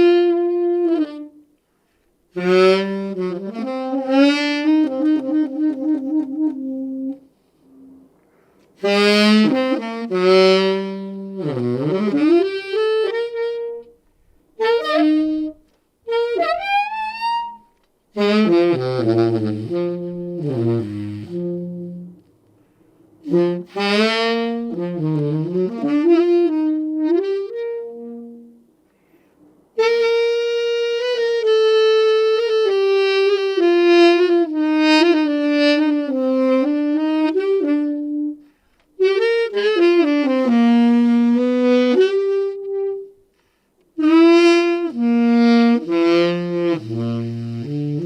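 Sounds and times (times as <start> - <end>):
solo tenor saxophone melody: 0.0 - 8.1, 8.7 - 22.4, 23.2 - 28.8, 29.7 - 48.0.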